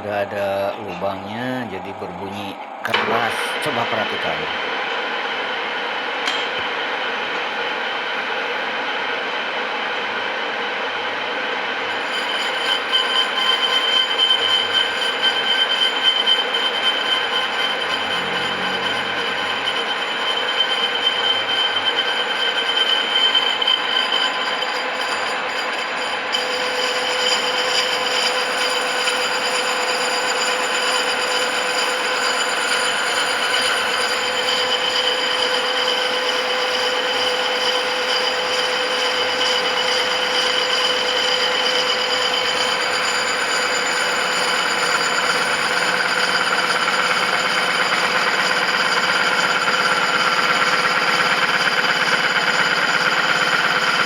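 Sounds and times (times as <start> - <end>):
cnc machine cutting metal: 0.0 - 9.6, 11.7 - 54.0
loud ringing squeal: 11.8 - 54.0.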